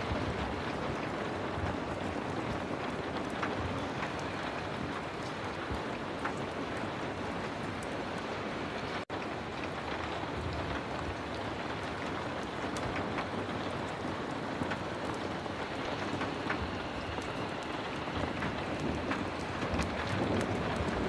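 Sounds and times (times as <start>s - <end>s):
heavy rain falling: 0.0s - 21.0s.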